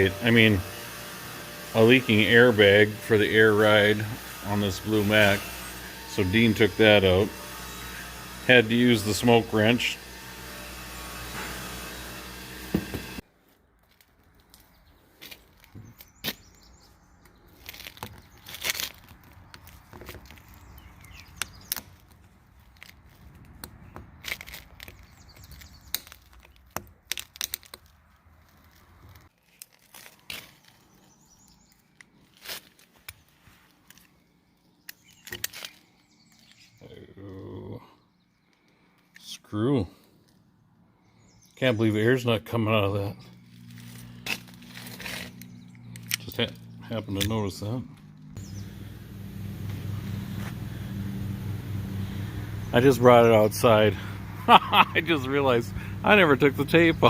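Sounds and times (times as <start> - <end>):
low hum: 43.2 - 57.0.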